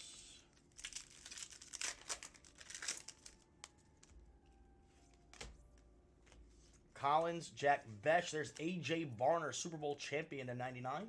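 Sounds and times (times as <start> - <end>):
wrapper crinkling and tearing: 0.5 - 4.2
cards being handled: 0.6 - 6.8.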